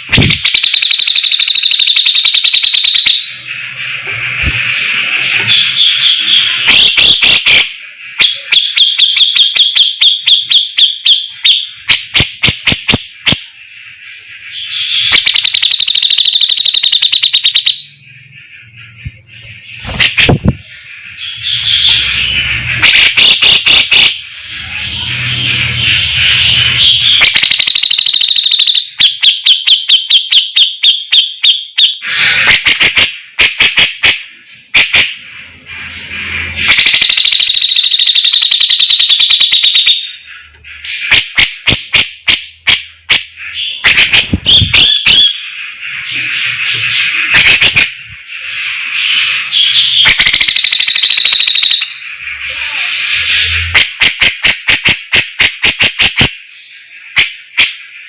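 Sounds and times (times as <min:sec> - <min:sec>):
bulbul singing: 0:00.0 - 0:32.1, 0:34.3 - 0:52.2.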